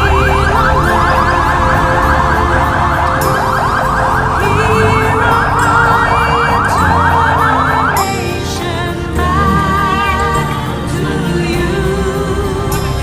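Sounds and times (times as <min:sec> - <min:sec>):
siren yelping: 0:00.0 - 0:08.6
background music: 0:00.0 - 0:13.0.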